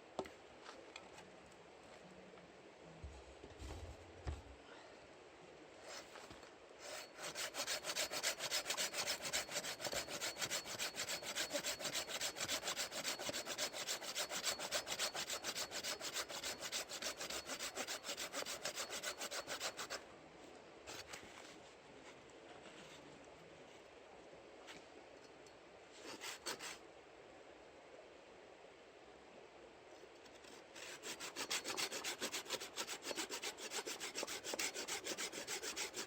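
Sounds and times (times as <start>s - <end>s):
hand saw cutting wood: 6.8s - 20.0s, 26.0s - 26.8s, 30.8s - 36.0s.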